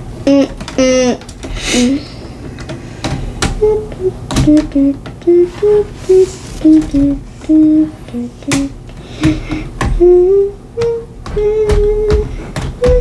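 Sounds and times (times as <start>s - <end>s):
person humming: 0.2s - 2.4s, 3.4s - 13.0s
plastic pieces clicking: 0.3s - 5.8s.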